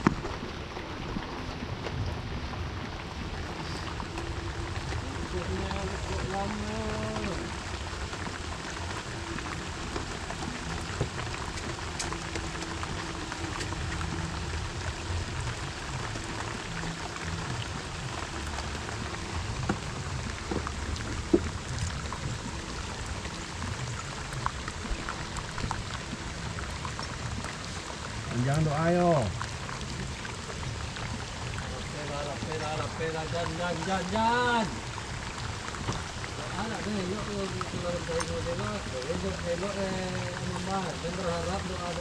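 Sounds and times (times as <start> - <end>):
heavy rain falling: 0.0 - 42.0.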